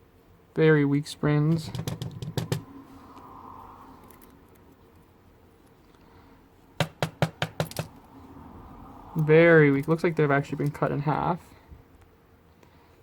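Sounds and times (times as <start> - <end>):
metallic lock parts clicking: 9.6 - 10.8.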